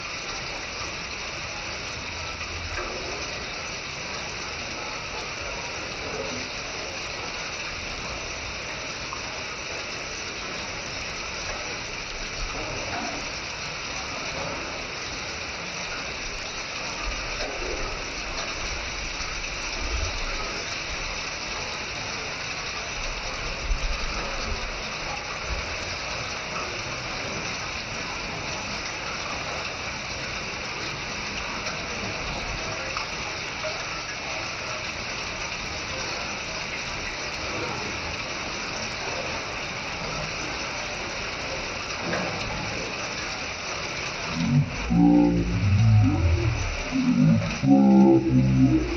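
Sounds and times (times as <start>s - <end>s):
low thumps: 44.4s - 48.9s.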